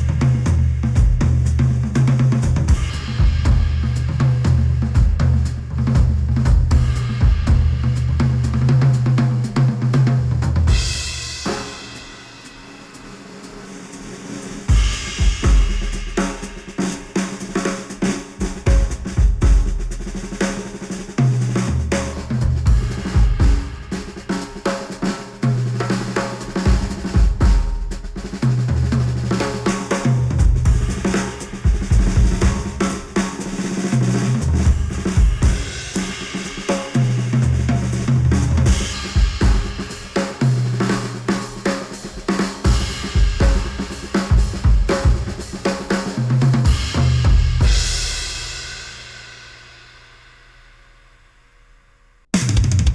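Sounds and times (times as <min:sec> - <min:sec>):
bass line: 0:00.0 - 0:08.9
drum kit beat: 0:00.0 - 0:49.7, 0:52.3 - 0:52.9.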